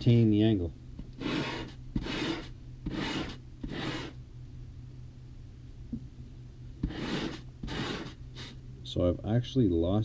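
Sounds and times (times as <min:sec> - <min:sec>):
chisel scraping on sandpaper: 0:01.2 - 0:04.2, 0:06.8 - 0:08.6.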